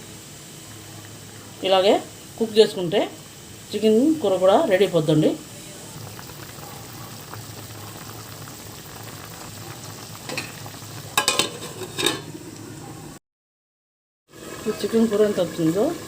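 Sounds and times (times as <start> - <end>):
curry hissing in a pan: 0.0 - 13.2, 14.3 - 16.0
spoon scraping a pan: 11.2 - 12.3.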